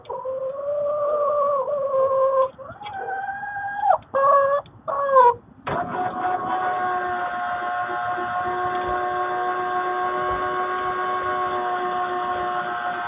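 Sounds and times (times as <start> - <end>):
chickens squawking: 0.0 - 5.5
motor whine of coop door: 5.7 - 13.0.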